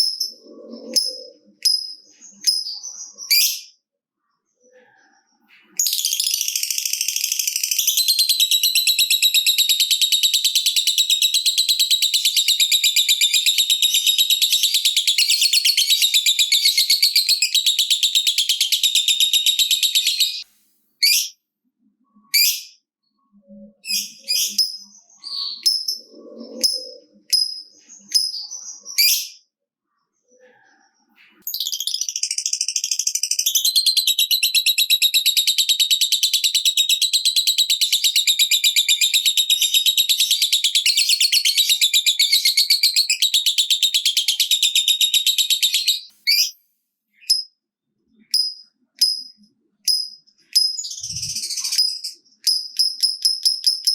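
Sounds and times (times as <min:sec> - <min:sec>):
lovebird chattering trill: 0:00.0 - 0:03.7, 0:31.5 - 0:46.5
bird chirps: 0:00.0 - 0:20.4, 0:21.0 - 0:53.9.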